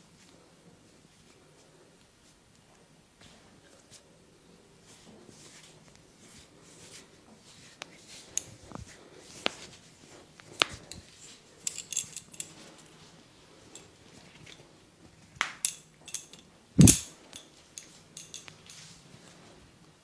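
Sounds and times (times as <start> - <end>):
sharp clicks and snaps: 15.4 - 17.4.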